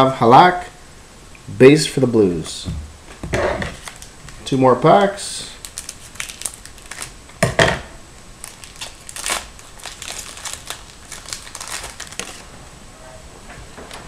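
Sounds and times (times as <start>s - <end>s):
card pack wrapper crinkling: 3.8s - 4.4s, 5.6s - 7.2s, 8.4s - 12.5s.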